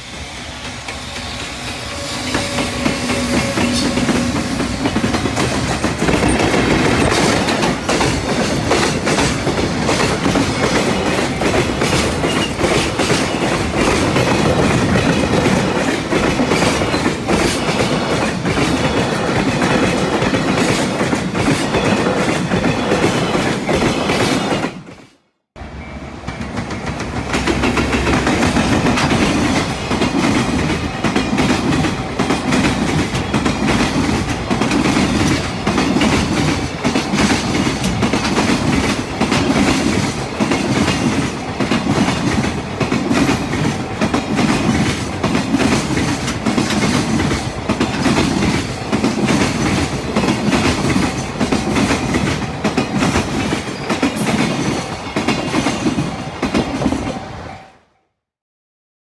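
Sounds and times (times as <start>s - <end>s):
wheels clattering over rail joints: 2.2s - 24.3s.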